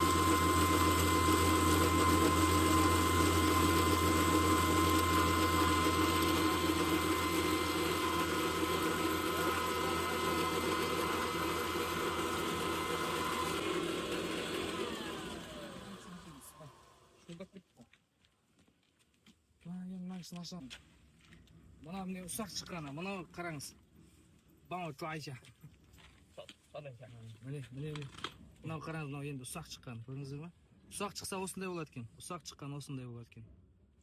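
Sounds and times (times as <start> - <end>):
grinder crushing corn: 0.0 - 17.5.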